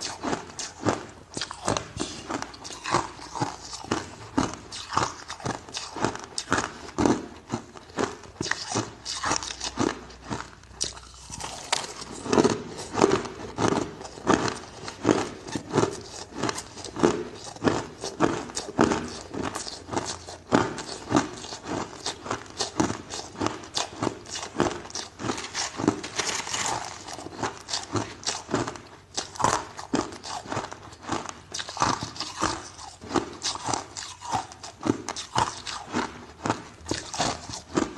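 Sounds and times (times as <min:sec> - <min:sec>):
person chewing ice: 0:00.0 - 0:37.9.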